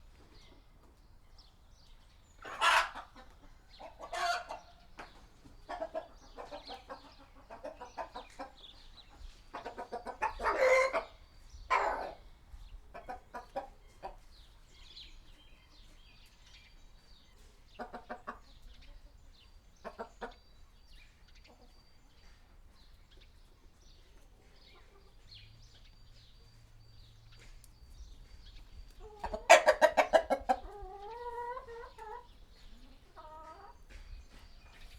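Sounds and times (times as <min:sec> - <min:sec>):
hens clucking: 0:02.0 - 0:14.6, 0:17.0 - 0:20.8, 0:21.4 - 0:25.4, 0:27.3 - 0:34.9.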